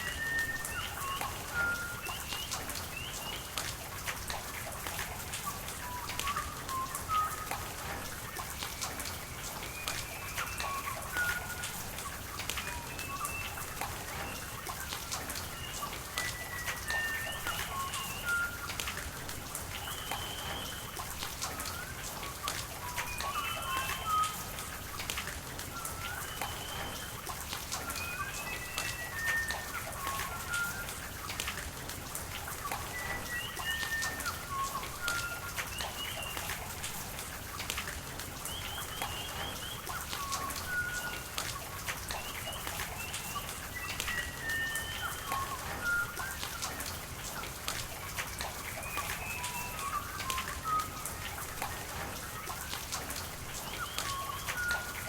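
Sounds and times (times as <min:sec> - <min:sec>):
running water: 0:00.0 - 0:55.0
steady rain: 0:00.0 - 0:55.0
water drips pattering: 0:00.0 - 0:55.0
birds whistling: 0:19.8 - 0:24.4, 0:25.7 - 0:27.2, 0:38.5 - 0:41.3, 0:42.1 - 0:46.8, 0:53.6 - 0:55.0.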